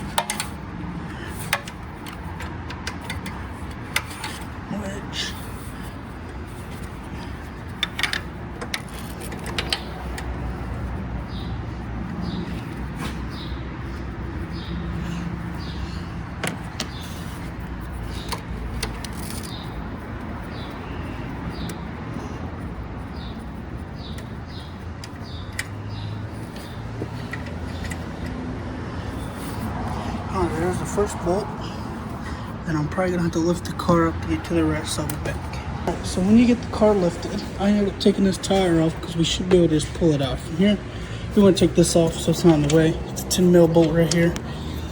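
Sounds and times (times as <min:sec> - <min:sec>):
sharp metal knocks: 0:00.0 - 0:00.6
socket ratchet clicking: 0:00.0 - 0:04.6, 0:07.6 - 0:10.6, 0:24.1 - 0:28.4.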